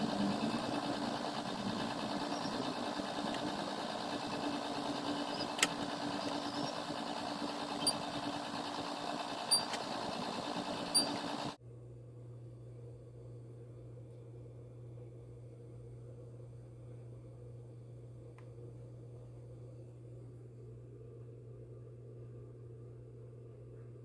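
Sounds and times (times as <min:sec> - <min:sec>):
disc drive and fan whirring: 0:00.0 - 0:11.6.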